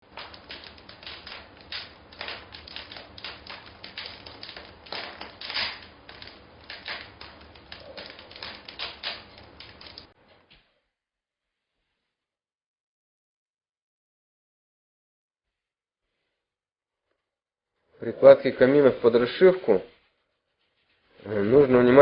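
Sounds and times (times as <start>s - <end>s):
rapid sharp clicks and taps: 0.0s - 10.1s.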